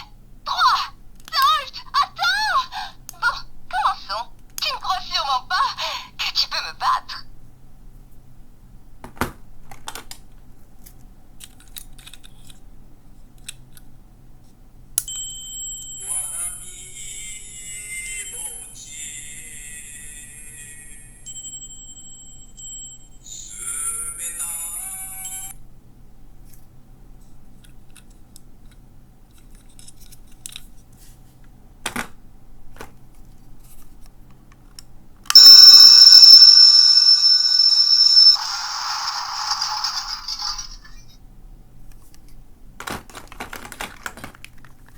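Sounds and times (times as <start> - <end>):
plastic parts clicking: 11.4 - 12.6
shrill electronic alarm tone: 35.3 - 40.8
tinny electronic jingle: 35.3 - 40.8.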